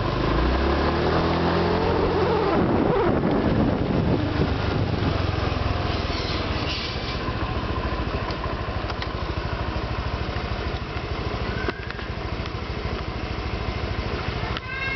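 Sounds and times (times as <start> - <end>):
scooter engine running: 0.0 - 14.9.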